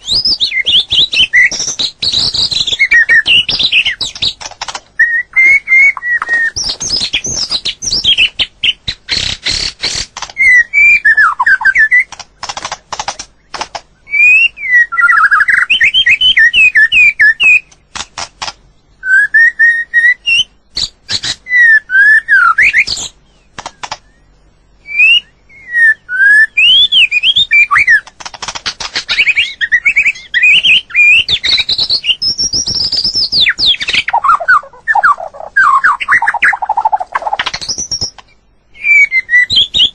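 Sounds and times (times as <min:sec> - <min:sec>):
bird singing whistled phrases: 0:00.0 - 0:04.3, 0:05.0 - 0:09.7, 0:10.4 - 0:12.1, 0:14.0 - 0:17.7, 0:19.0 - 0:23.2, 0:23.8 - 0:28.0, 0:29.1 - 0:39.9
bird sharp clicks: 0:11.4 - 0:13.9, 0:17.4 - 0:18.6, 0:22.8 - 0:24.2, 0:27.5 - 0:34.6.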